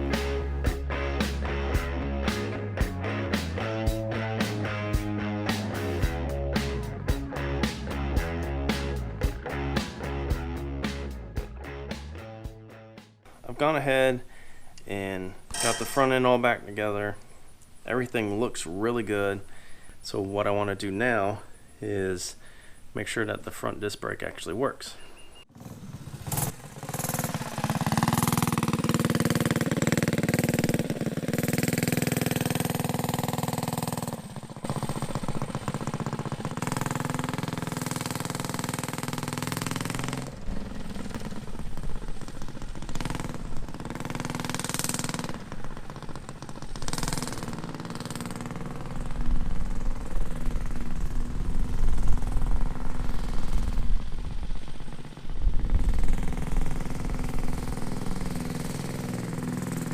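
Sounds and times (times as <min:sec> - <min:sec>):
small engine revving: 0:00.0 - 0:12.1, 0:25.5 - 0:59.9.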